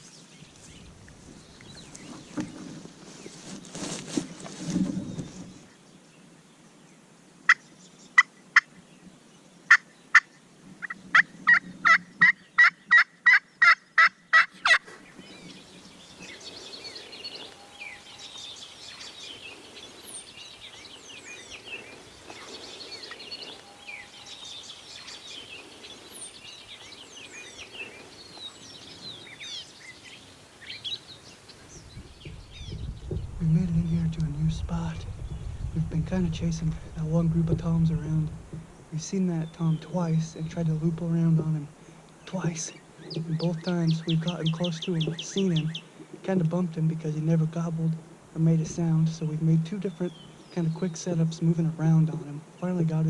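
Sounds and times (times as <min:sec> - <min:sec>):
songbirds chirping: 0:00.0 - 0:53.0
turkey call yelping: 0:09.7 - 0:15.1.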